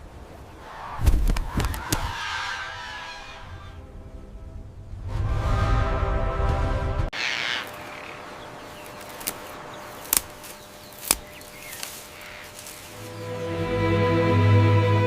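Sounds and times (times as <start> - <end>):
wild birds calling: 0.2 - 4.1, 7.1 - 14.4
music: 3.8 - 7.1, 13.0 - 15.0.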